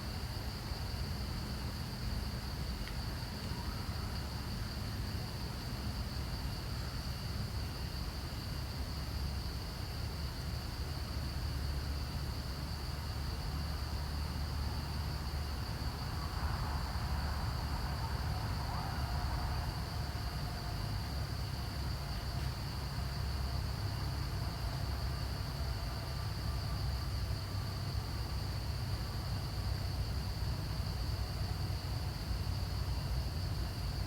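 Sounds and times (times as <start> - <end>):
insects droning: 0.0 - 34.0.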